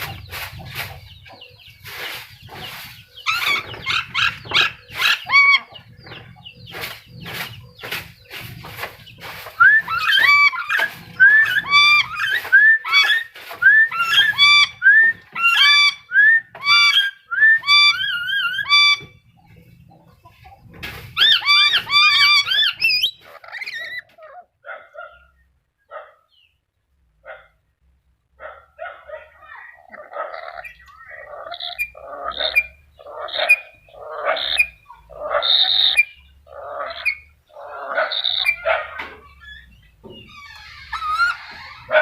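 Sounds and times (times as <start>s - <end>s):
parrot calling: 3.2s - 5.8s, 9.6s - 19.2s, 21.2s - 24.5s, 29.2s - 42.0s.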